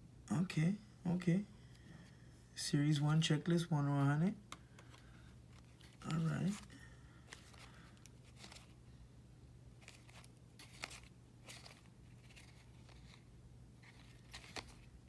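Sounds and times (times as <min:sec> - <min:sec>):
low steady hum: 0:00.0 - 0:15.0
trading cards rustling and ticking: 0:04.0 - 0:08.8, 0:09.8 - 0:15.0.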